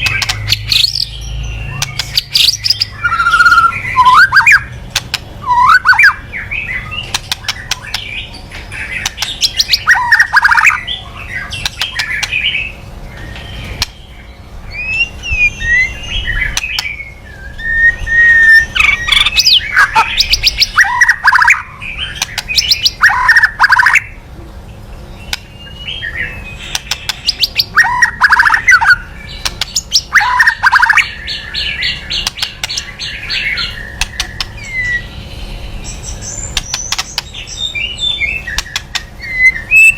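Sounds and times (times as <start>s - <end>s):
bird clicks and chattering: 0.0s - 1.1s, 1.8s - 3.7s, 4.4s - 5.4s, 7.0s - 10.8s, 11.5s - 12.4s, 16.5s - 17.0s, 18.8s - 23.9s, 26.6s - 31.0s, 32.0s - 33.0s, 33.6s - 34.9s, 36.5s - 37.4s, 38.4s - 39.2s.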